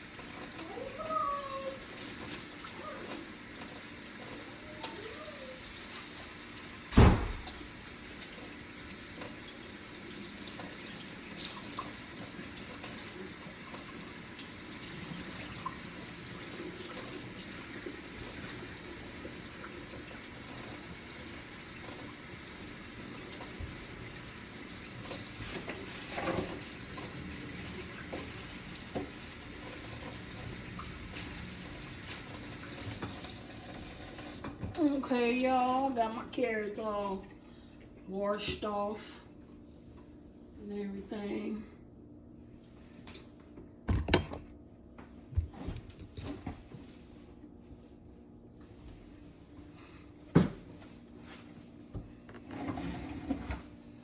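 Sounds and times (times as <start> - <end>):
loud thump: 6.9 - 7.5
tap running into sink: 27.9 - 30.2.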